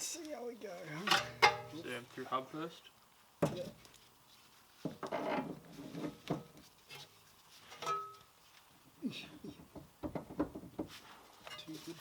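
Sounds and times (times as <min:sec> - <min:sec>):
metal knocks and clunks: 0:01.1 - 0:01.8, 0:09.6 - 0:10.9
metal ringing: 0:01.1 - 0:01.8.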